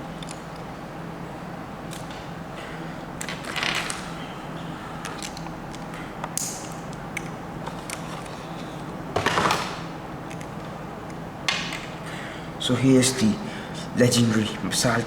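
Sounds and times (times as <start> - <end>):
small plastic parts clicking: 5.0 - 8.3.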